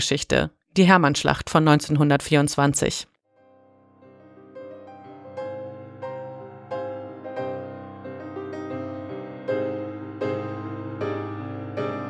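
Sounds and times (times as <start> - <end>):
slow piano music: 3.3 - 12.0.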